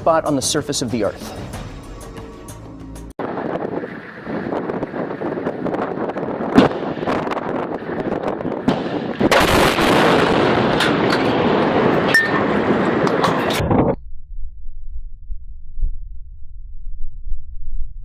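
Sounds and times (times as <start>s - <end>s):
gunfire and explosions rumble: 3.0s - 18.0s
sharp bangs: 3.2s - 14.0s.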